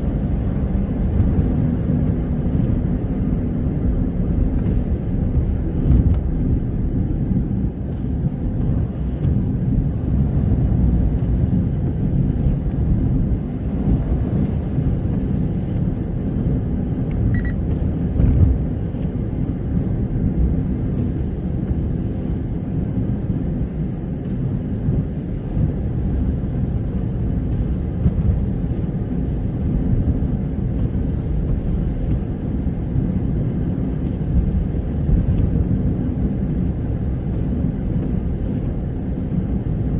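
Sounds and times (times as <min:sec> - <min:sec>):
car engine and tyres rumbling: 0:00.0 - 0:39.9
short high beep: 0:17.3 - 0:17.6.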